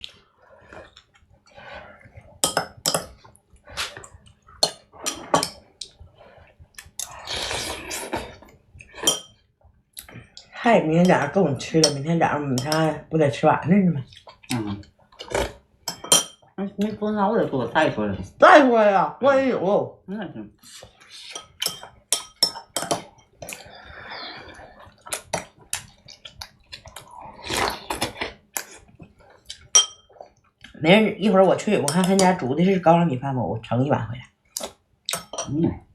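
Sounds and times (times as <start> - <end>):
dishes and utensils clattering: 2.4 - 3.3, 4.6 - 5.6, 8.9 - 9.4, 15.9 - 16.5, 21.2 - 23.4, 29.6 - 30.1, 35.1 - 35.6.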